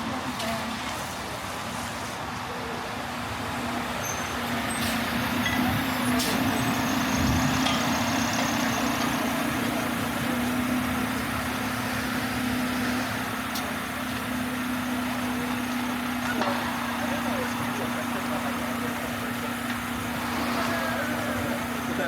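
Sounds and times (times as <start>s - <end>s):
street hiss: 0.0s - 22.0s
vehicle engine humming: 0.0s - 22.0s.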